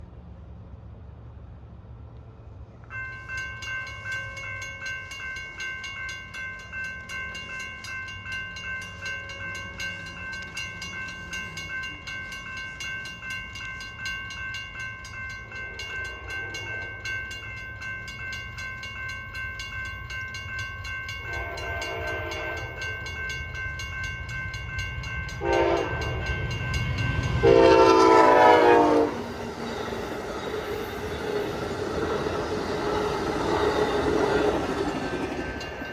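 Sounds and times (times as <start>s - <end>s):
train rumble: 0.0s - 35.9s
railroad crossing bells ringing: 2.8s - 35.9s
locomotive horn blasts: 21.3s - 22.8s, 25.4s - 26.2s, 27.4s - 29.3s.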